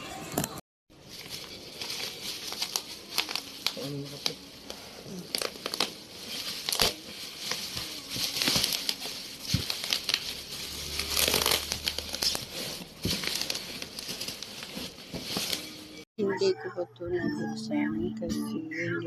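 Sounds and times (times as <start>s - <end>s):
packaging crinkling: 1.0s - 16.0s.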